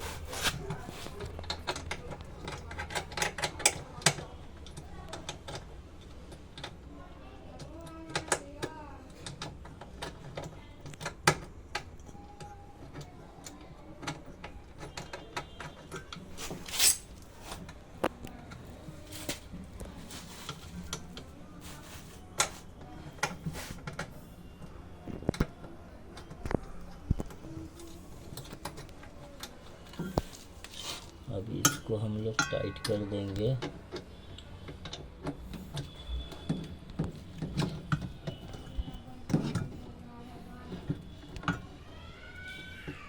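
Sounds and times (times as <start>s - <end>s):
clicks and knocks of parts: 0.3s - 6.9s, 7.5s - 21.8s
metal scrape: 16.4s - 17.2s.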